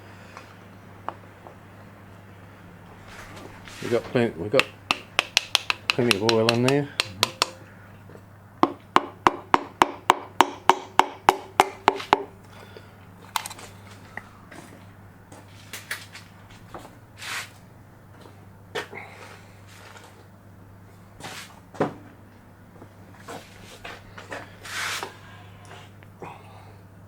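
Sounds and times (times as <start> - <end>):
knocks and clunks of parts: 4.0 - 7.7
sharp hand tool taps: 4.6 - 7.7, 8.6 - 12.3.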